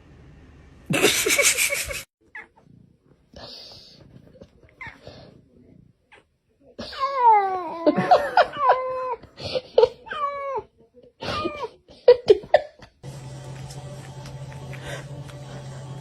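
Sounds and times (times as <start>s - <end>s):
steady low hum: 13.0s - 16.0s.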